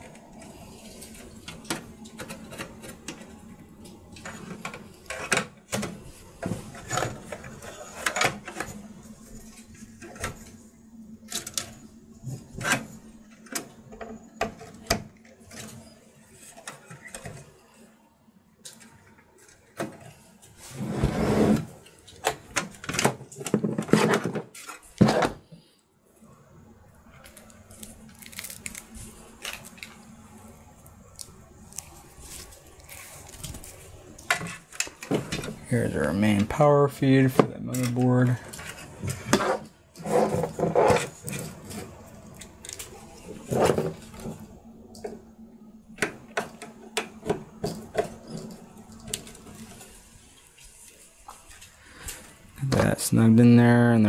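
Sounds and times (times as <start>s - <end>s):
cables and plastic connectors rattling: 37.2s - 45.2s, 46.0s - 50.1s.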